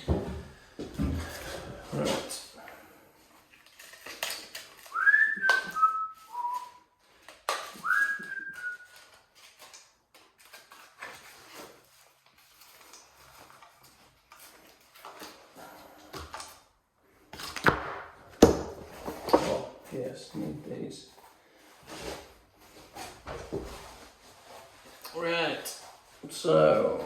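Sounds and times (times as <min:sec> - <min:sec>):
person whistling a tune: 0:04.9 - 0:07.0, 0:07.8 - 0:09.0.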